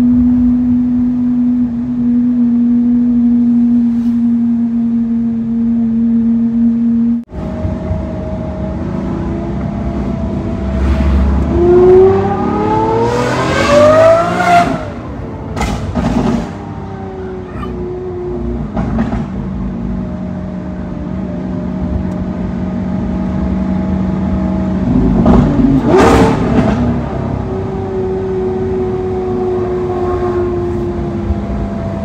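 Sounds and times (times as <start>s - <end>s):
sports car engine revving: 7.4s - 31.8s.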